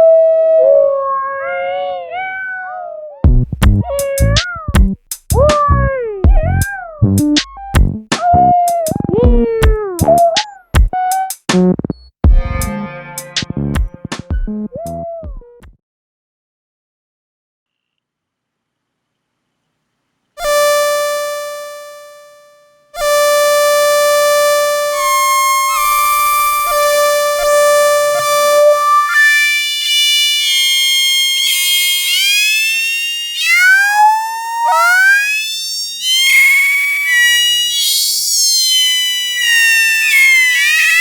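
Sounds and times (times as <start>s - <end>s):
synthesizer imitating cat meow: 0.0s - 3.2s, 3.8s - 11.3s, 14.7s - 15.6s, 20.4s - 22.4s, 23.0s - 41.0s.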